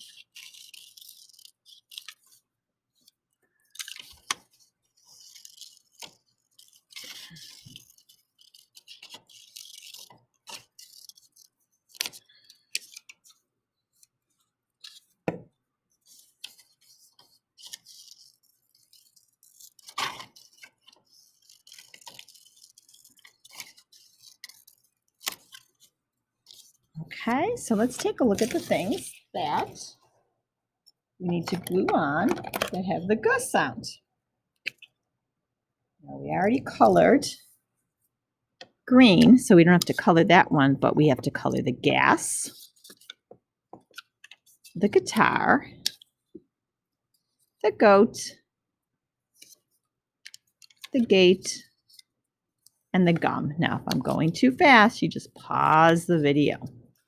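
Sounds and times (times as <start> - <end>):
paper rustling: 0.0 - 15.2, 16.0 - 29.9, 31.4 - 32.9, 42.4 - 43.2
scissors cutting paper: 0.1 - 2.4, 16.1 - 25.8, 27.5 - 29.8.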